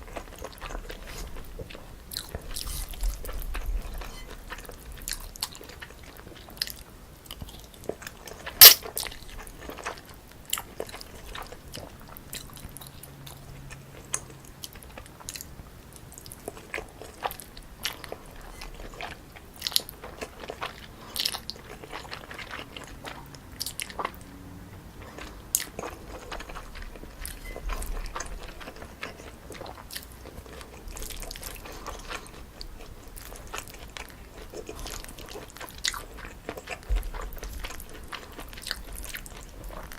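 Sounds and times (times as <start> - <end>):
person chewing crunchy noodles: 0.0 - 39.9.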